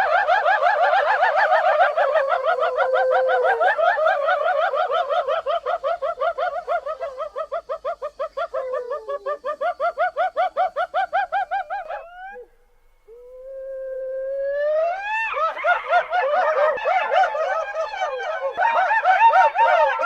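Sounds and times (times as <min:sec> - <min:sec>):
hyena giggling whoops: 0:00.0 - 0:12.5.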